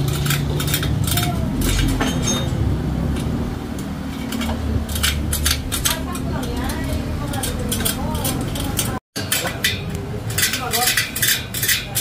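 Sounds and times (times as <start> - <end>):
low rumble of vehicles: 0.0 - 12.0.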